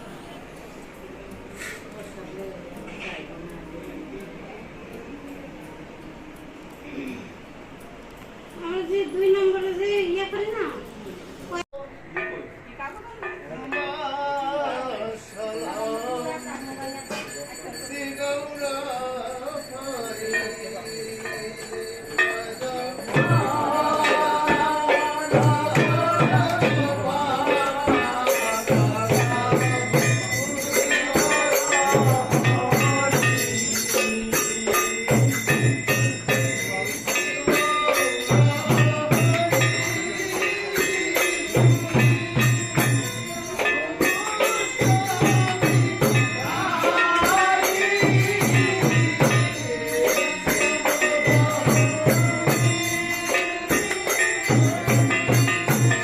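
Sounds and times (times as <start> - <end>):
jingling percussion: 0.0 - 56.0
steady drum beat: 23.1 - 56.0.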